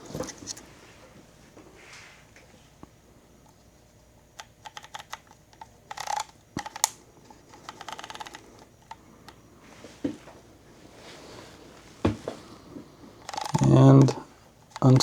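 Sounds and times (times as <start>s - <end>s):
camera ticking: 13.2s - 14.8s.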